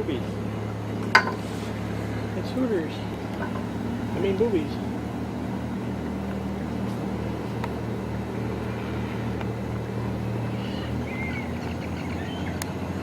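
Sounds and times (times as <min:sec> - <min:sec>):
motor humming: 0:03.1 - 0:12.5
high bird calls: 0:03.4 - 0:12.5.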